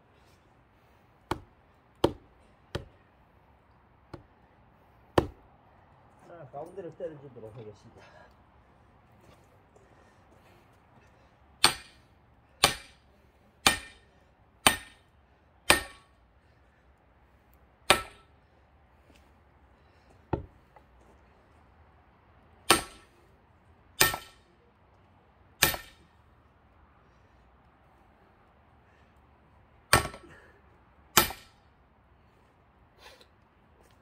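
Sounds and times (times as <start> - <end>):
hammer striking axe head: 1.3 - 2.2, 5.2 - 5.4, 11.6 - 12.0, 12.6 - 13.0, 13.6 - 14.0, 14.6 - 15.0, 15.7 - 16.1, 17.9 - 18.2, 22.7 - 23.0, 24.0 - 24.4, 25.6 - 26.0, 29.9 - 30.2, 31.2 - 31.5.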